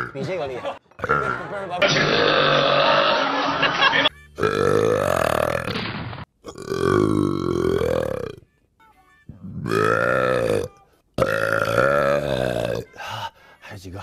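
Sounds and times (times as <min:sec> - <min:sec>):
man belching: 0:01.0 - 0:03.2, 0:04.4 - 0:05.8, 0:06.4 - 0:08.4, 0:09.5 - 0:13.0.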